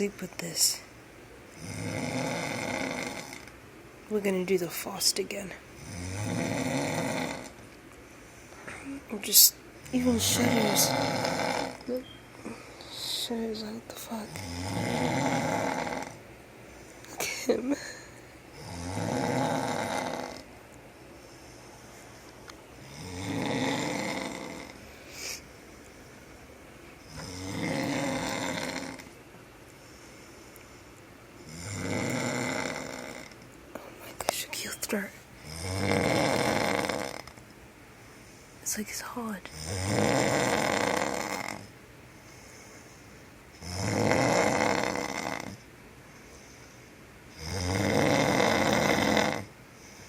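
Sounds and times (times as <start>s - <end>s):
man snoring: 1.6s - 3.5s, 5.8s - 7.6s, 10.2s - 11.9s, 14.3s - 16.2s, 18.6s - 20.5s, 22.8s - 25.4s, 27.0s - 29.1s, 31.4s - 33.4s, 35.4s - 37.4s, 39.5s - 41.7s, 43.6s - 45.6s, 47.3s - 49.5s.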